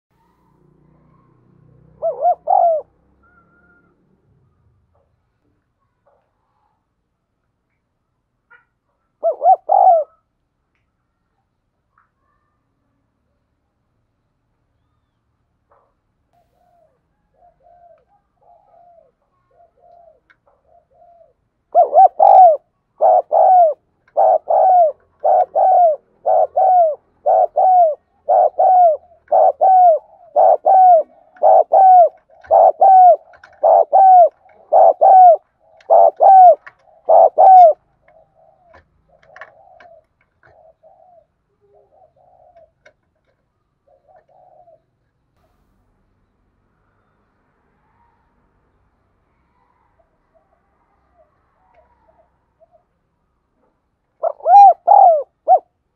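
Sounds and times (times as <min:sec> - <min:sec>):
dove cooing: 0:00.2 - 0:03.9, 0:09.2 - 0:10.3, 0:16.6 - 0:45.0, 0:54.2 - 0:55.8.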